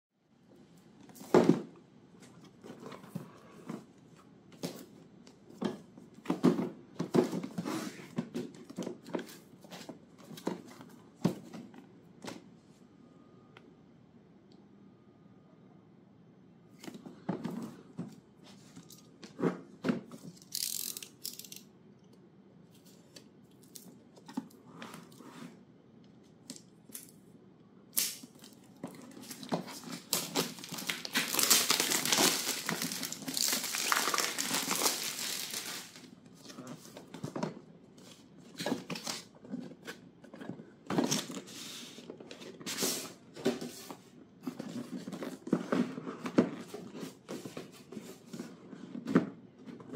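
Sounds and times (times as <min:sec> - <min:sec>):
plastic wrap crinkling and tearing: 0:28.0 - 0:36.1
packaging rustling and clicking: 0:28.5 - 0:36.1.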